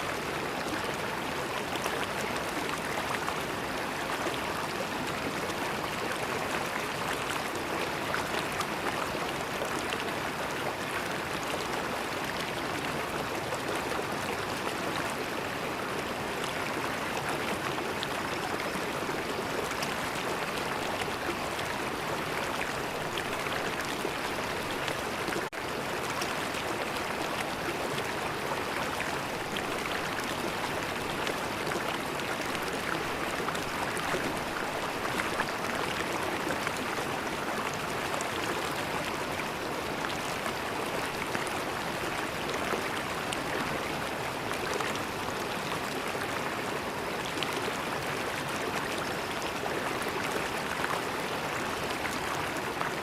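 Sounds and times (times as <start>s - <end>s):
river water flowing: 0.0s - 53.0s.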